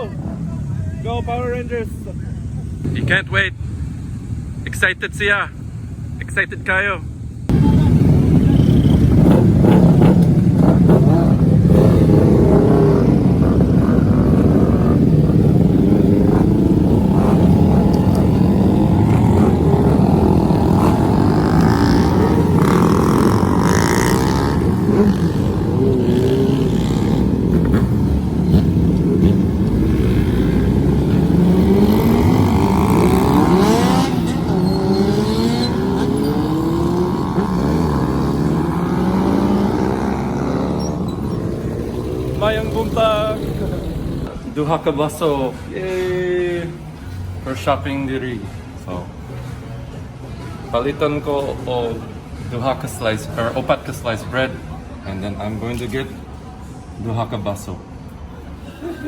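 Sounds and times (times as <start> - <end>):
motorcycle engines revving: 0.0 - 44.5.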